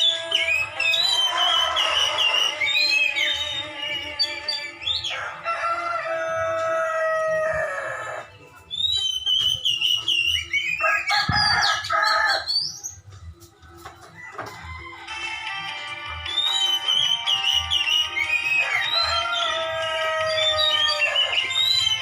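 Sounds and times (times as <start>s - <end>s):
bird whistled chirps: 0.0s - 5.2s, 8.7s - 13.0s, 16.2s - 22.0s
rooster crowing: 5.1s - 8.3s, 10.8s - 12.5s, 14.1s - 15.4s, 18.4s - 22.0s.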